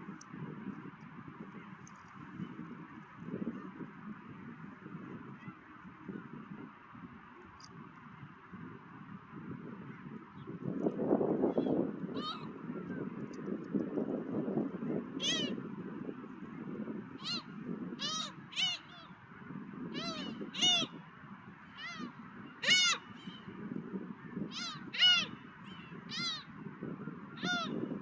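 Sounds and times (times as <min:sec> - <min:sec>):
wind noise: 0:00.0 - 0:28.0
seagulls calling: 0:11.4 - 0:12.8, 0:15.1 - 0:15.6, 0:17.2 - 0:21.0, 0:21.7 - 0:23.6, 0:24.3 - 0:28.0.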